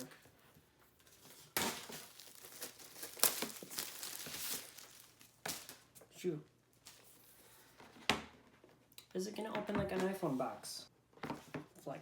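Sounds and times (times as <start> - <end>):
cardboard box tearing and crinkling: 1.5 - 5.8.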